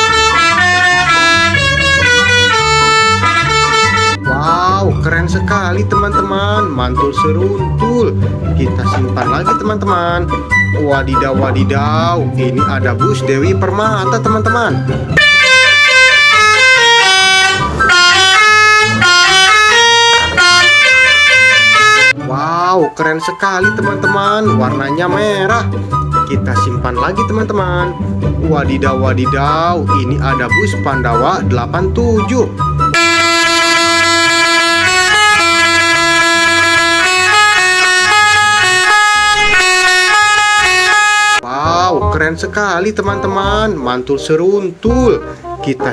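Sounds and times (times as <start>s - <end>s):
multi-tone bus horn melody: 0.0s - 4.2s, 15.2s - 22.2s, 32.9s - 41.5s
low bass line: 0.0s - 12.4s, 14.8s - 22.2s.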